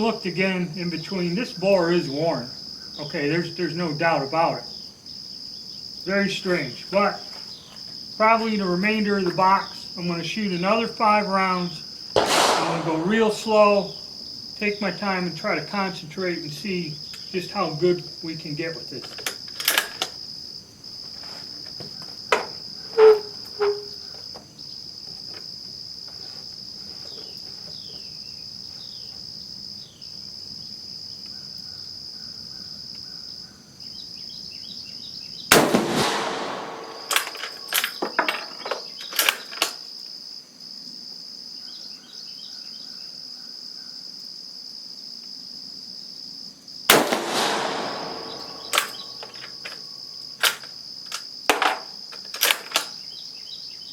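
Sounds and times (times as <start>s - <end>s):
rifle shots with ringing tail: 12.2s - 13.8s, 35.5s - 37.8s, 46.9s - 49.4s
rifle bolt clicks: 35.6s - 37.8s, 46.9s - 49.4s.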